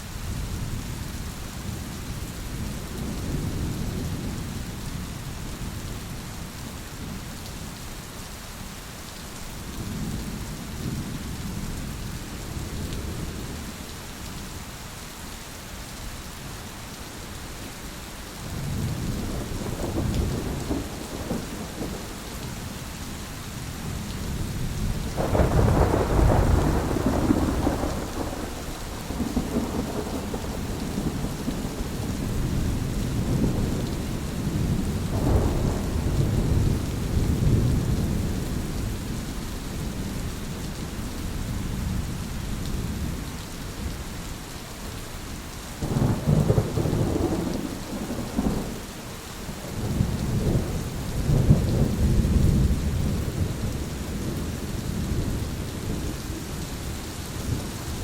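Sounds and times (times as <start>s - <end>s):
steady rain: 0.0s - 58.0s
thunder rolling: 25.0s - 38.1s, 45.8s - 48.8s.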